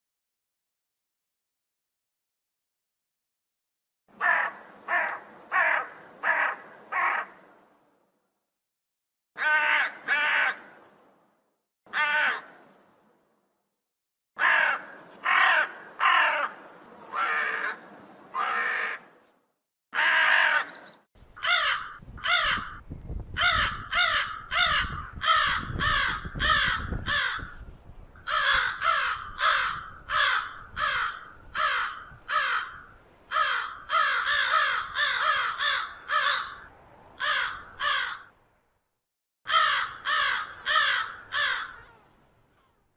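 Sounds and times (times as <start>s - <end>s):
crows cawing: 4.2s - 7.4s, 9.4s - 10.8s, 11.9s - 12.6s, 14.4s - 19.2s, 20.0s - 22.8s, 23.4s - 27.6s, 28.2s - 38.4s, 39.5s - 42.0s.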